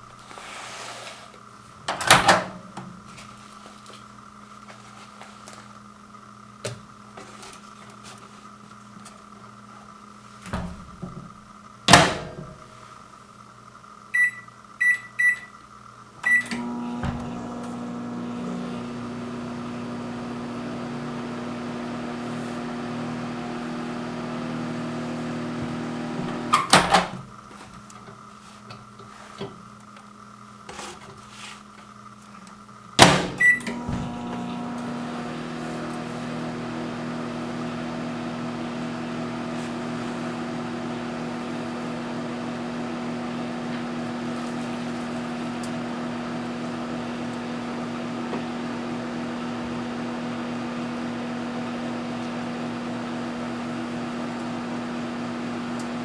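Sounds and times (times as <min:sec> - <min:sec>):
microwave humming: 0:01.4 - 0:56.0
microwave door shutting: 0:01.9 - 0:03.0, 0:10.5 - 0:11.2, 0:11.9 - 0:12.6, 0:16.2 - 0:18.9, 0:25.2 - 0:27.3, 0:33.0 - 0:36.1
keypad beep: 0:14.2 - 0:15.5.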